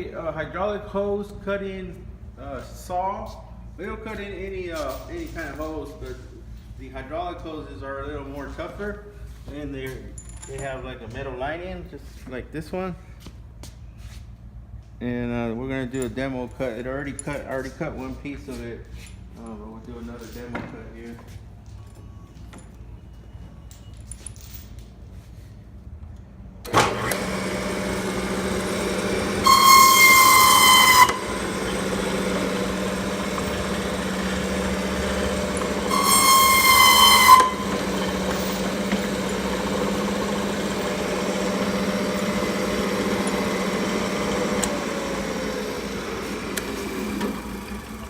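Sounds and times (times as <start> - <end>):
chop saw motor running: 26.6 - 48.0
saw blade screeching through hose: 29.0 - 42.6.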